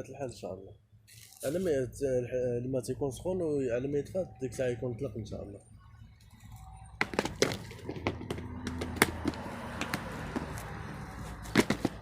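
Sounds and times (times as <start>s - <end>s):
dried herbs rustling: 1.1s - 1.8s
sharp clicks and taps: 7.0s - 10.5s.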